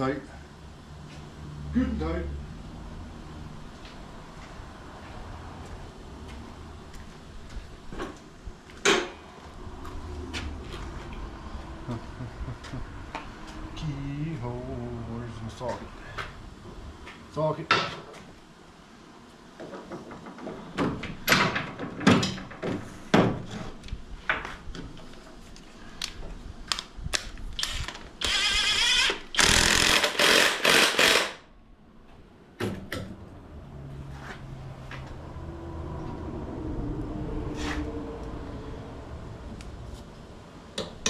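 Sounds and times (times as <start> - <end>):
pneumatic impact wrench: 27.6 - 31.5.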